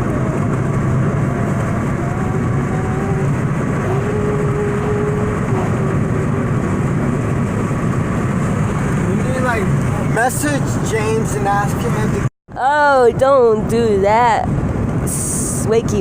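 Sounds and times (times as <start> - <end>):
car road and engine rumble: 0.0 - 16.0.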